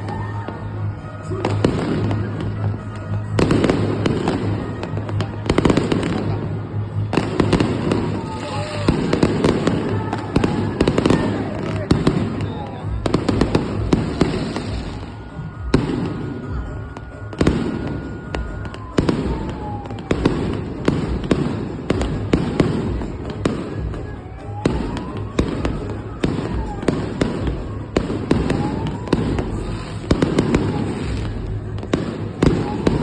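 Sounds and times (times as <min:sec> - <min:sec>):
fireworks bangs and crackles: 0:00.0 - 0:33.0
fireworks whistling: 0:00.0 - 0:33.0.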